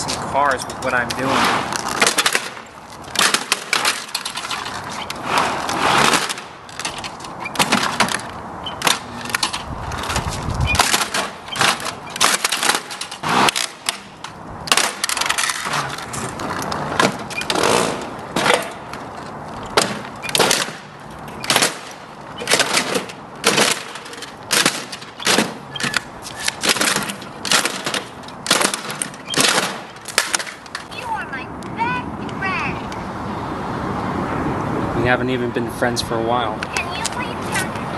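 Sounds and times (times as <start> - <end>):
plastic toy being smashed: 1.7 - 4.8, 10.8 - 14.1, 14.7 - 16.2, 19.8 - 20.8, 21.4 - 30.9.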